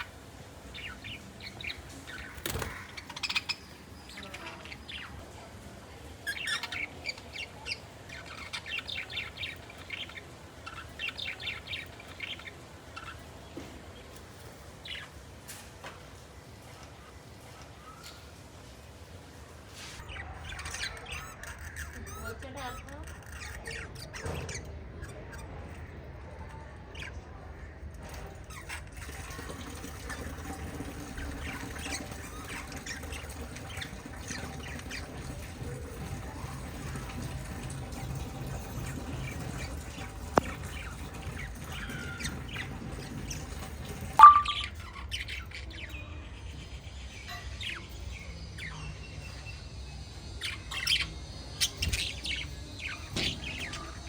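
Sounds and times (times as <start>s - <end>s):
budgerigars chirping and chattering: 0.0s - 15.4s, 19.8s - 54.0s.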